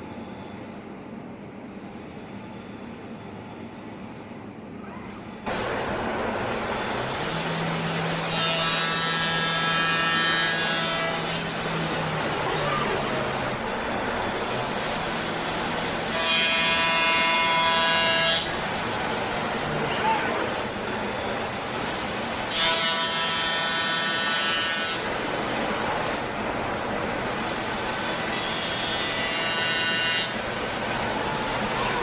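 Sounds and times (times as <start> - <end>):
power grinder whining: 6.6 - 21.2.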